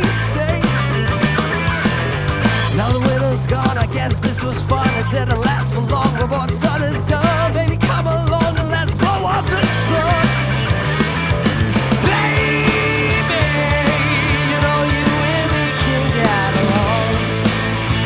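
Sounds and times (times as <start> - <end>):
live rock band playing: 0.0 - 18.0
wavering lead guitar notes: 9.4 - 18.0.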